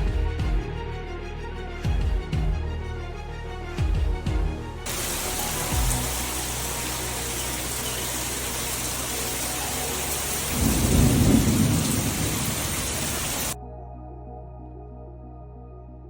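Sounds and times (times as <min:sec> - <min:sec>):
heavy rain pouring: 0:04.9 - 0:13.6
thunder rumbling: 0:04.9 - 0:13.6.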